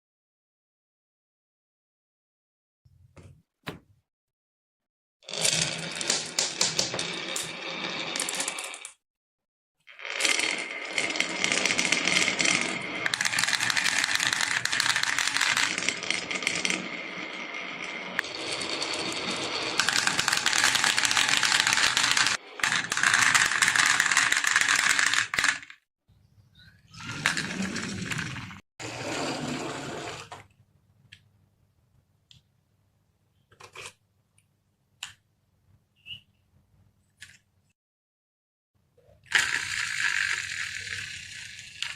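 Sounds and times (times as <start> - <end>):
marbles clattering down wooden run: 5.3 - 8.9, 10.1 - 17.0, 18.0 - 25.7, 39.3 - 41.9.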